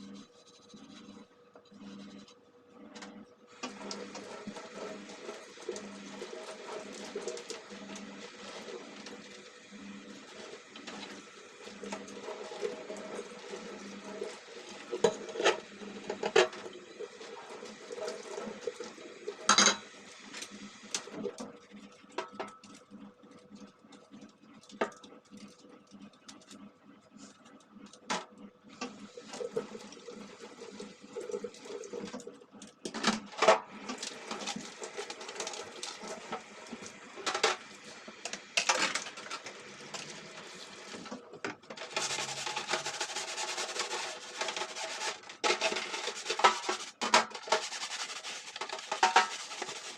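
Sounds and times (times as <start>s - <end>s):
running water: 3.5s - 21.3s, 28.9s - 32.4s, 41.8s - 49.9s
scrubbing: 41.8s - 49.9s.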